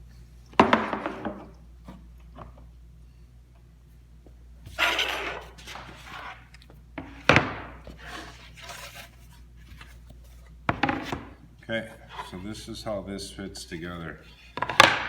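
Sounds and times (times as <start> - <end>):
wood scraping: 4.7 - 12.9.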